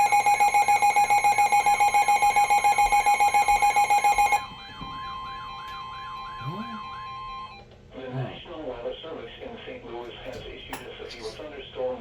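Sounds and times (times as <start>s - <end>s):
rapid electronic alarm beeps: 0.0s - 4.5s.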